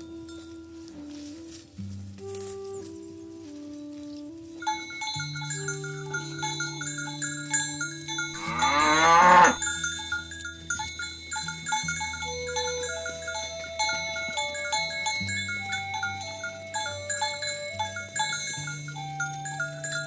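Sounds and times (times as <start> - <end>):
music with bell-like notes: 0.0 - 20.0
cow mooing: 8.3 - 9.7.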